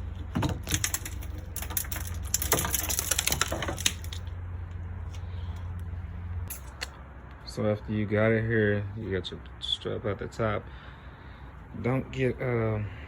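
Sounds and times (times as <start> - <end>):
broken glass crackling and clinking: 0.6 - 4.2.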